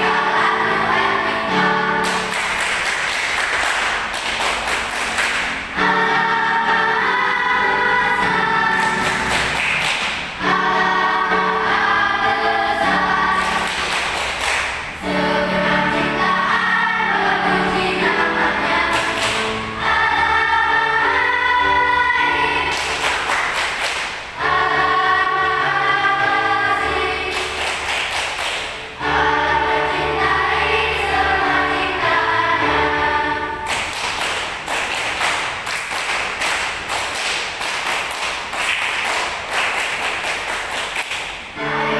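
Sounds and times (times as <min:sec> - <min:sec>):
choir singing in harmony: 0:00.0 - 0:03.9, 0:05.6 - 0:28.1, 0:28.7 - 0:34.0, 0:41.5 - 0:41.9.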